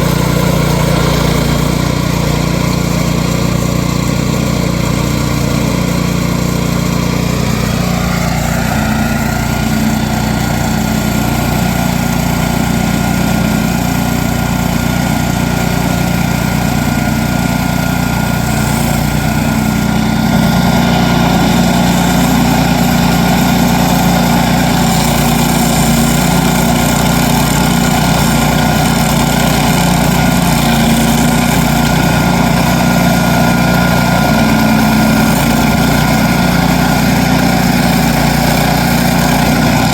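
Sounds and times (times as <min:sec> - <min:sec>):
petrol engine running: 0:00.0 - 0:39.9.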